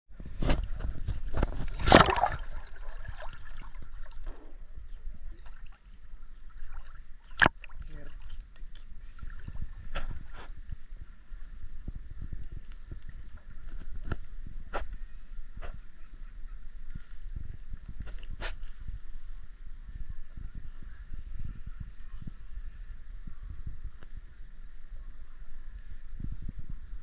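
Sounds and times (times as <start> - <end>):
seawater sloshing and lapping: 1.1 - 4.6
sharp water splashes: 1.6 - 4.3, 6.7 - 7.9.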